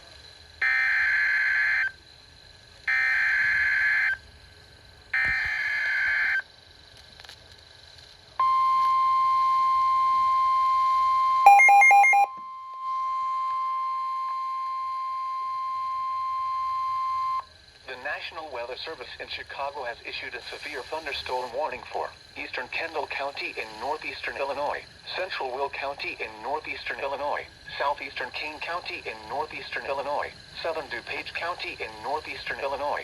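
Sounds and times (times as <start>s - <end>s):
steady attention tone: 8.4s - 17.4s
rapid beeping: 11.5s - 12.3s.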